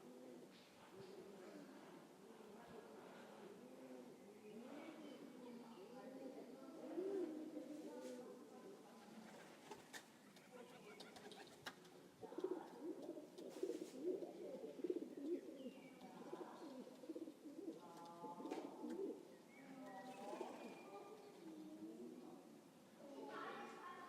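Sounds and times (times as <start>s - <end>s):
pigeon cooing: 0.0s - 1.9s, 6.7s - 7.9s, 12.2s - 19.4s
faint bird chirps: 19.2s - 21.7s.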